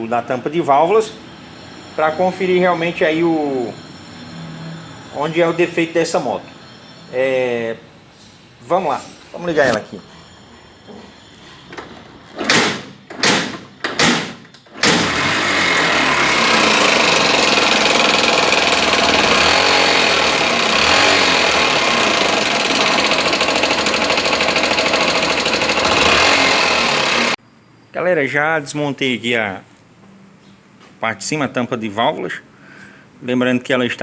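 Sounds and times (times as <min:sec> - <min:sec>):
motorcycle engine cranking: 0:11.6 - 0:27.4
motorcycle engine running: 0:14.9 - 0:27.4.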